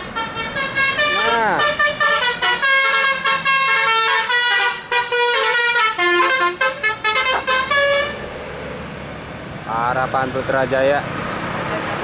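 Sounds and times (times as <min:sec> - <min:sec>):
multi-tone bus horn tune: 0:00.0 - 0:08.3
steady traffic rumble: 0:00.0 - 0:12.0.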